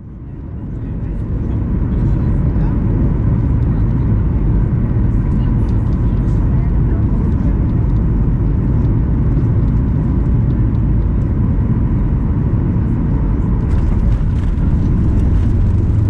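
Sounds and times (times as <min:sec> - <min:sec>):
jet airliner cabin rumble: 0:00.0 - 0:16.0.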